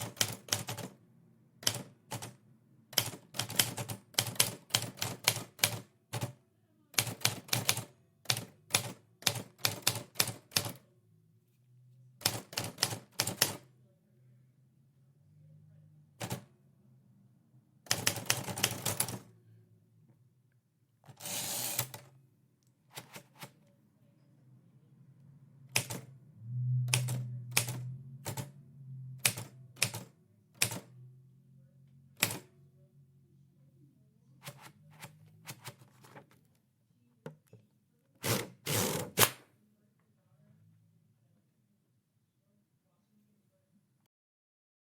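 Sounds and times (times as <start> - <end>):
faint low hum: 10.6 - 12.3, 13.6 - 44.1
typewriter keystrokes: 25.7 - 26.1, 27.0 - 28.5, 29.2 - 30.9, 32.2 - 32.5.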